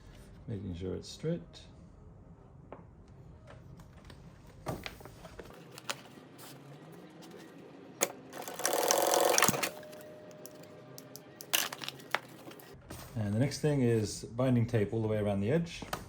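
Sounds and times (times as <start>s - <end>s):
sewing machine stitching: 8.0s - 12.8s.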